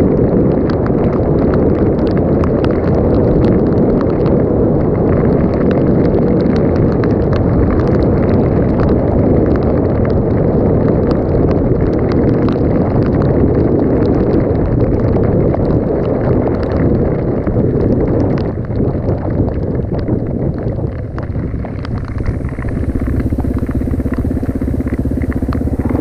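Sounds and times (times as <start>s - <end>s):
wind buffeting microphone: 0.0s - 26.0s
small clicks and rattles: 5.1s - 26.0s
dirt bike engine: 20.8s - 26.0s.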